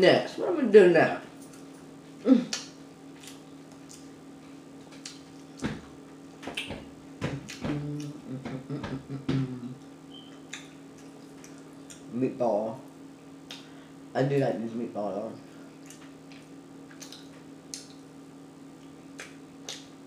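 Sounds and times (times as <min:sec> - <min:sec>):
closed-mouth hum: 0:00.0 - 0:20.0
faint electrical hum: 0:00.0 - 0:20.0
lip-smacking and chewing: 0:02.5 - 0:04.2, 0:04.8 - 0:05.7, 0:07.4 - 0:08.2, 0:09.8 - 0:12.1, 0:15.8 - 0:18.2, 0:18.8 - 0:20.0.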